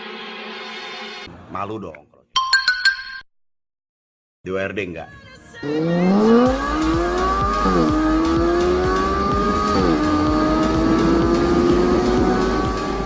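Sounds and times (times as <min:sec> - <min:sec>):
car engine accelerating hard: 0:05.6 - 0:13.0.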